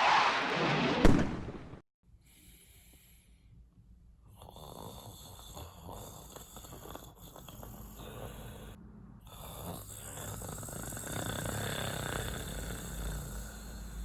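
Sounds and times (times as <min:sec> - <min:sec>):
person snoring: 0:04.3 - 0:14.0.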